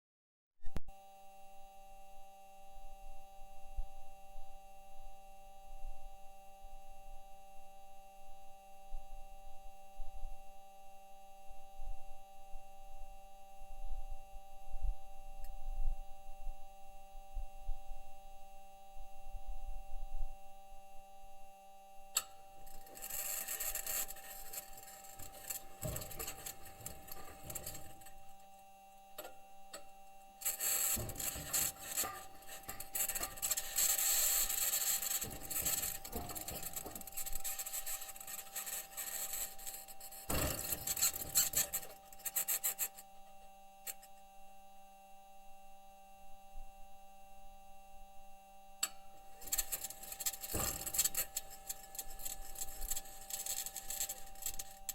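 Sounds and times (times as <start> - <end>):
faint steady tones: 0.9 - 54.9
loud high-pitched scratching: 22.6 - 28.3, 30.4 - 43.0, 49.3 - 54.9
wheels rumbling and thumping: 22.9 - 28.2, 30.5 - 39.6, 40.2 - 42.0, 49.4 - 54.8.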